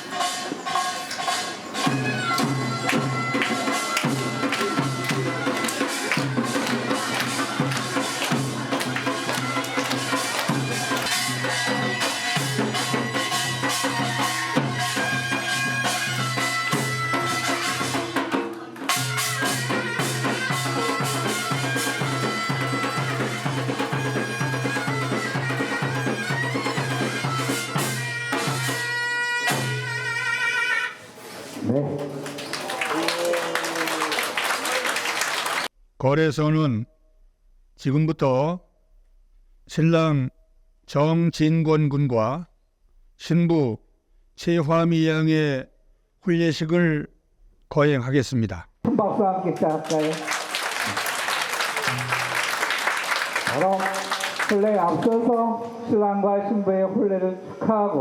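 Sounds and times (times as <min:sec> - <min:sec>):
steady drum beats: 0:00.0 - 0:30.2
shawm high reedy melody: 0:00.1 - 0:31.0.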